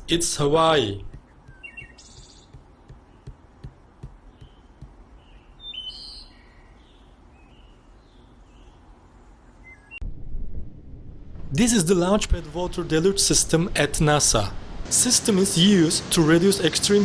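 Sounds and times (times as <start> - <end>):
faint birds chirping: 0.0 - 10.0
soft low knocks: 1.0 - 5.2.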